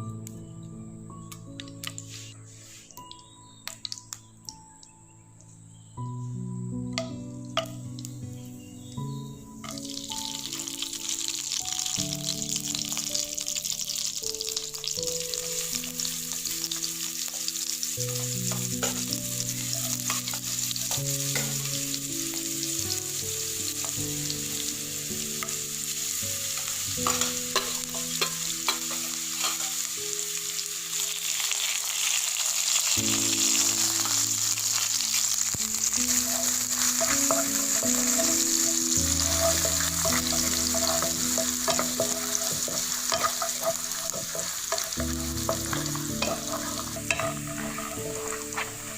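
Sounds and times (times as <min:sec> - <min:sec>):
food sizzling in oil: 0:07.0 - 0:48.9
spoon clicking and scraping: 0:27.0 - 0:29.7, 0:36.1 - 0:48.7.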